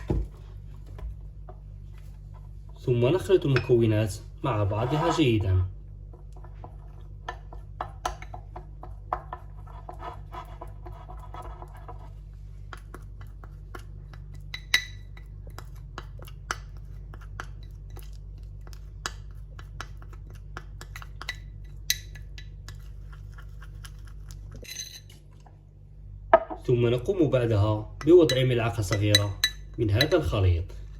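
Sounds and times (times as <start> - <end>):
teaspoon scraping a dish: 4.5 - 5.4, 6.4 - 12.2, 19.8 - 25.2.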